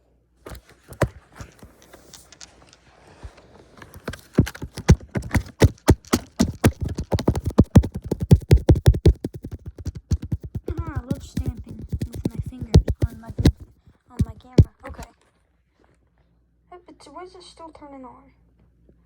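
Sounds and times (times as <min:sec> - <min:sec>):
fingertips tapping on camera: 0:03.9 - 0:15.1.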